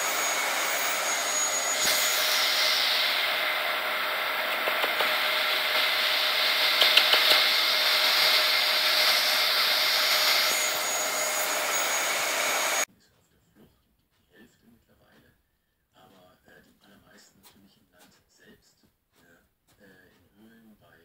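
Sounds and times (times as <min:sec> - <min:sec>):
vacuum cleaner whine: 0:00.0 - 0:12.9.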